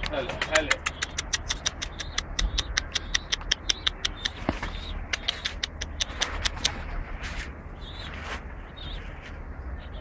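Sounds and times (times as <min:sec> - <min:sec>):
rapid sharp high clicks: 0:00.0 - 0:06.9.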